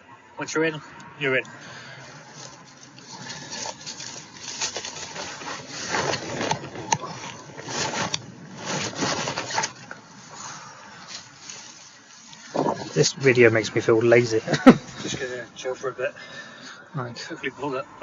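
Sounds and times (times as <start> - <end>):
rustling and scraping of fabric: 2.0 - 15.7.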